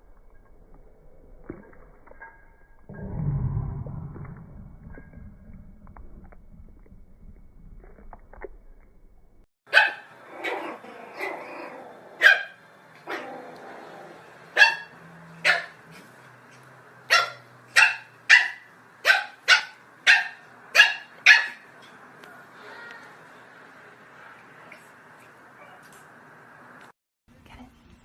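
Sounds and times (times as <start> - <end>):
dog barking: 9.7 - 11.3, 12.2 - 13.3, 14.6 - 15.8, 17.1 - 21.6.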